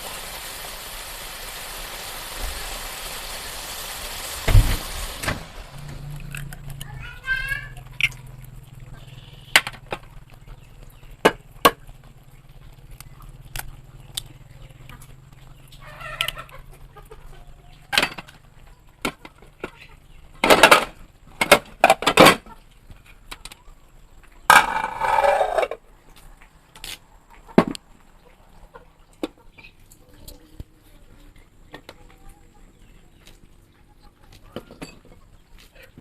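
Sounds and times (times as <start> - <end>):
chickens clucking: 4.3 - 36.0.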